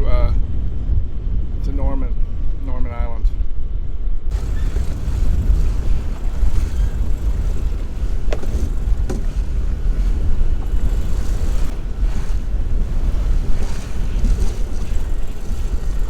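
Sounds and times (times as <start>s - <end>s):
wind buffeting microphone: 0.0s - 16.0s
water rushing along hull: 4.3s - 16.0s.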